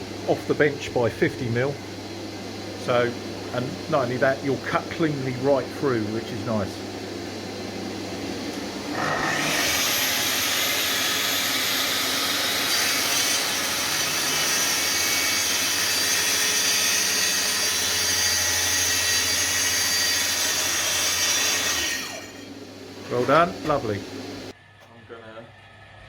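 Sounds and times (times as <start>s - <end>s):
track saw cutting board: 8.8s - 22.5s.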